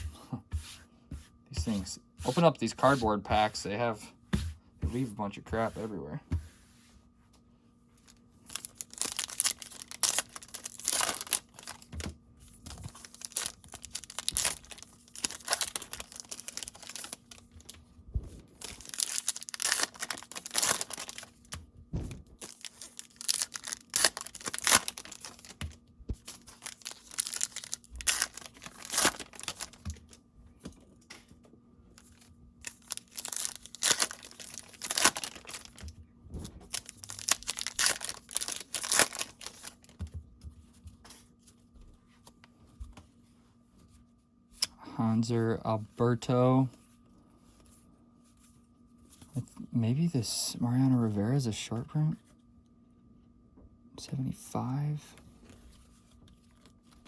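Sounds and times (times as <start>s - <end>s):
cardboard packs tearing: 8.5s - 11.9s, 12.9s - 17.4s, 18.6s - 21.5s, 22.4s - 25.6s, 26.4s - 29.9s, 32.6s - 35.8s, 36.7s - 39.9s
cards rustling: 8.5s - 17.8s, 18.5s - 21.6s, 22.4s - 30.8s, 32.0s - 35.8s, 36.7s - 39.9s.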